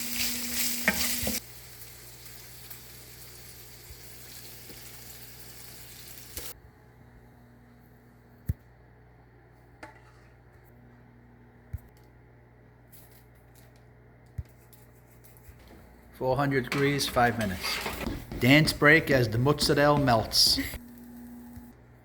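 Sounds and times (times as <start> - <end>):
oil sizzling in a pan: 0.0 - 6.6.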